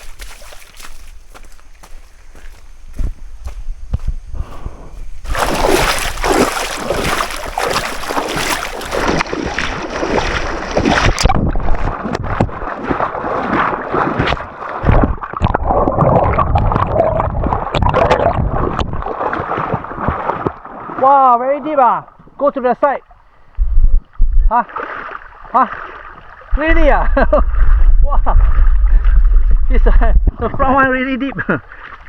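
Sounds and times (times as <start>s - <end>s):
wading splashes in river water: 0.0s - 1.6s, 5.2s - 23.5s, 24.4s - 32.0s.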